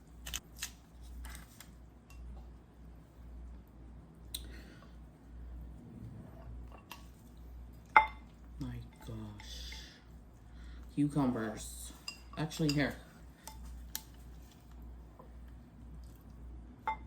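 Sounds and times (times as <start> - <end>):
low steady hum: 0.0 - 17.0
soft wet squishing: 7.0 - 16.6
utensils clicking on dishes: 12.0 - 14.2.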